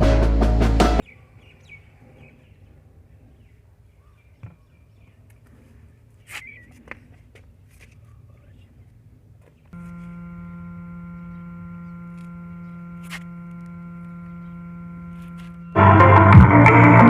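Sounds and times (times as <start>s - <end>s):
faint low hum: 9.7s - 16.3s
faint chirps: 9.8s - 15.8s.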